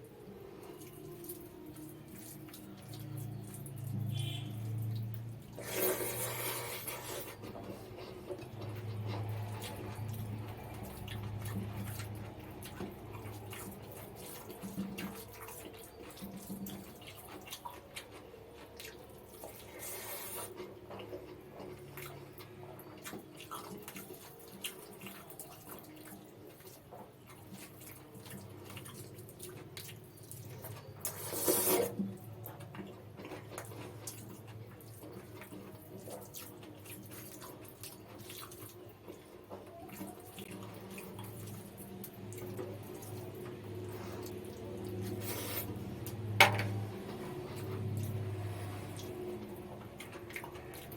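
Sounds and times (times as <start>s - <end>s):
chewing and mouth smacks: 0.7s - 46.3s, 47.4s - 50.9s
low steady hum: 39.7s - 50.9s.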